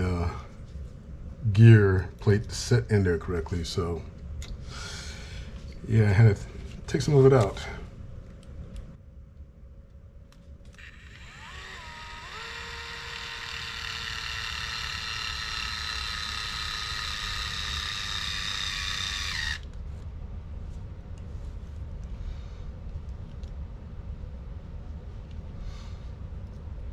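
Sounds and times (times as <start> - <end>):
small electric motor whining: 10.7 - 19.8.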